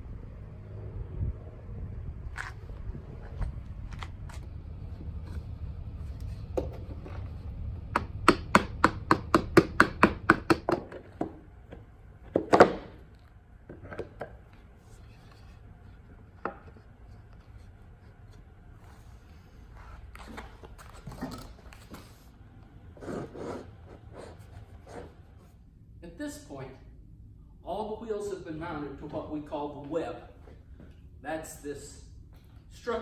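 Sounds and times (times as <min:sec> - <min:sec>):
hammering on wood: 0:07.9 - 0:11.4.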